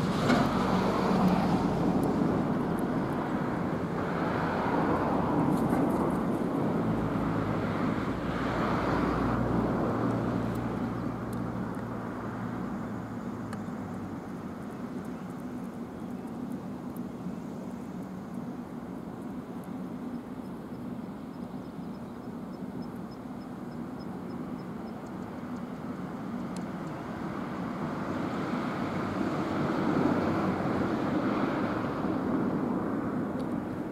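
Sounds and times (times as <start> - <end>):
vehicle passing by: 0.0 - 13.1, 27.1 - 33.2.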